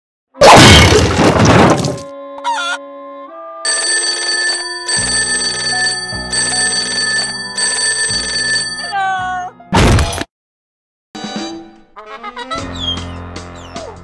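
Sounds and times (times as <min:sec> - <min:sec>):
cartoon bell ringing: 0:03.7 - 0:09.2.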